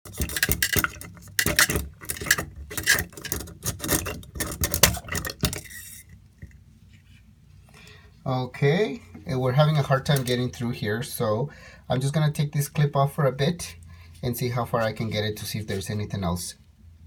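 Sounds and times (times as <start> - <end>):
drain cable scraping in drain: 0.0 - 6.2.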